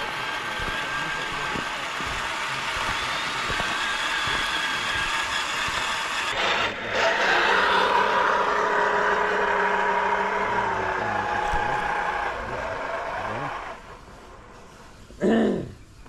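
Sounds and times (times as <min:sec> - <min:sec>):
electric motor whining: 0:00.0 - 0:15.1.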